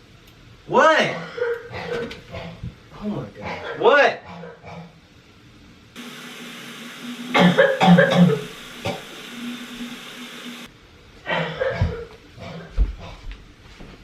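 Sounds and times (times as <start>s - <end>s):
steady hiss: 5.5s - 11.1s
woman coughing harshly: 7.3s - 9.0s.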